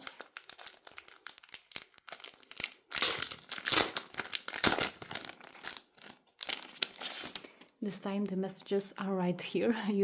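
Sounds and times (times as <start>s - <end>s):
packaging rustling: 0.0s - 7.7s.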